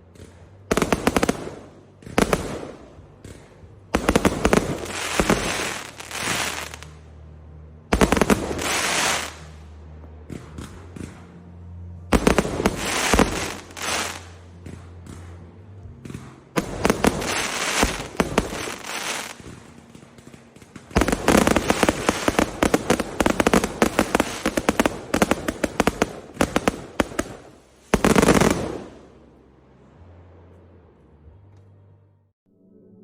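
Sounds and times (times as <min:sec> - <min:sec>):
fireworks crackling: 0:00.0 - 0:07.1, 0:07.9 - 0:09.7, 0:12.1 - 0:29.4
fireworks bangs: 0:00.1 - 0:07.0, 0:07.9 - 0:09.6, 0:12.1 - 0:29.3.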